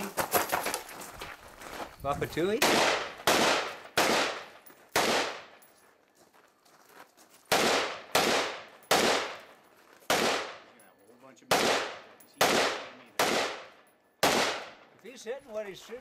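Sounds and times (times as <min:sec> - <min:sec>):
rifle shots echoing: 0:02.5 - 0:05.6, 0:07.5 - 0:10.8, 0:11.5 - 0:14.9.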